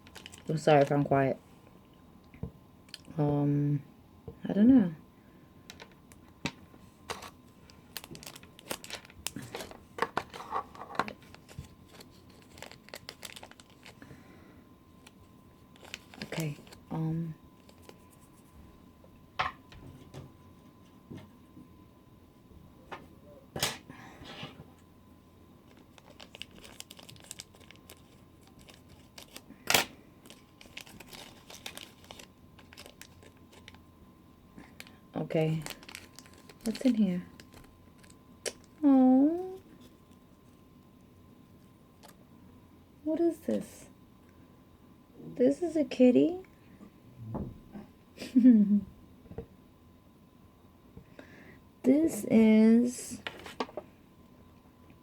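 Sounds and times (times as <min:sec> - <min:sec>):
packaging crinkling and tearing: 0:00.0 - 0:01.0, 0:07.1 - 0:14.0, 0:15.0 - 0:16.9, 0:17.6 - 0:18.4, 0:25.6 - 0:33.8, 0:34.7 - 0:38.8.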